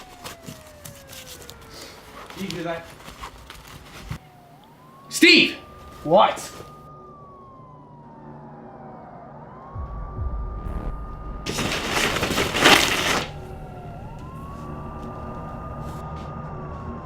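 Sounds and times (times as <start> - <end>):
police siren wailing: 0.0 - 17.0
low rumble: 9.5 - 12.6.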